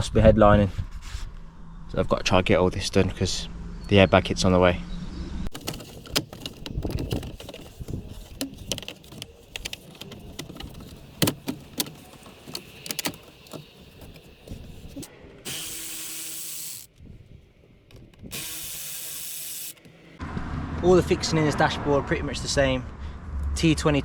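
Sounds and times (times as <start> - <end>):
tools on plastic trim: 5.5 - 15.1.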